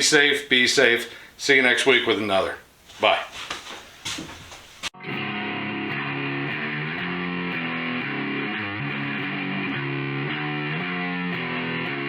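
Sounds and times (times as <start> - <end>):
distorted electric guitar riff: 5.0 - 12.0.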